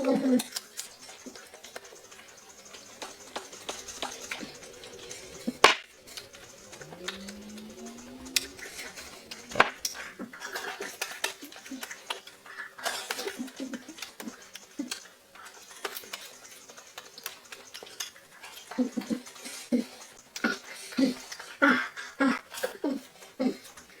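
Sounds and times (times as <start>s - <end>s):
person humming mmm: 3.7s - 10.0s.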